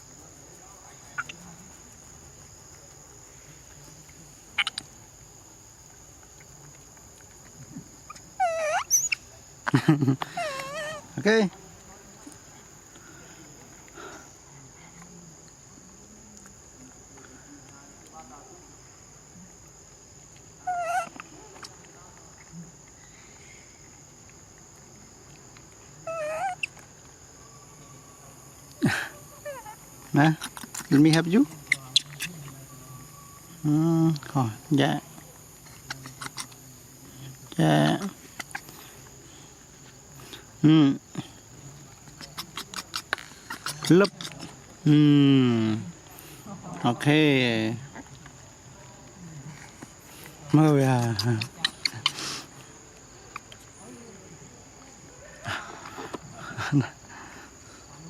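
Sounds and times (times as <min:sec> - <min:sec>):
monkey chirp: 0:01.0 - 0:01.6, 0:04.5 - 0:05.0, 0:08.0 - 0:11.1, 0:20.6 - 0:21.8, 0:26.0 - 0:26.9, 0:28.9 - 0:34.3, 0:35.6 - 0:36.6, 0:38.0 - 0:39.0, 0:42.0 - 0:44.6, 0:50.7 - 0:52.5
monkey wavering cry: 0:01.1 - 0:01.4, 0:04.6 - 0:04.9, 0:08.1 - 0:11.2, 0:20.6 - 0:21.7, 0:26.0 - 0:26.8, 0:28.7 - 0:33.6, 0:35.6 - 0:36.6, 0:42.1 - 0:44.5, 0:50.8 - 0:52.4
monkey harsh cry: 0:08.1 - 0:09.2, 0:10.3 - 0:11.1, 0:20.6 - 0:21.2, 0:26.1 - 0:26.8, 0:28.9 - 0:31.0, 0:42.1 - 0:44.4, 0:51.0 - 0:52.4
monkey high squeak: 0:08.1 - 0:09.2, 0:10.4 - 0:11.0, 0:20.7 - 0:21.2, 0:26.1 - 0:26.8, 0:42.2 - 0:44.4, 0:51.1 - 0:52.2.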